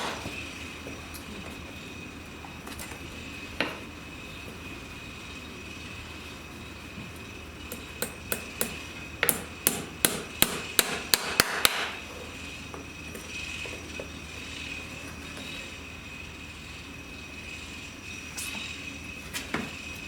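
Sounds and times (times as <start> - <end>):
hammer striking: 7.7 - 12.0.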